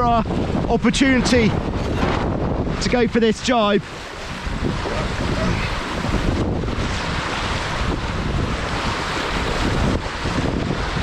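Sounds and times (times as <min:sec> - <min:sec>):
water rushing along hulls: 0:00.0 - 0:11.0
wind buffeting microphone: 0:00.0 - 0:11.0.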